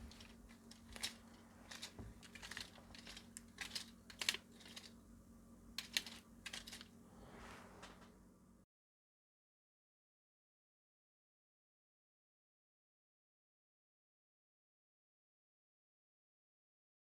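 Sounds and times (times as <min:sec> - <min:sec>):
faint steady hum: 0:00.0 - 0:08.6.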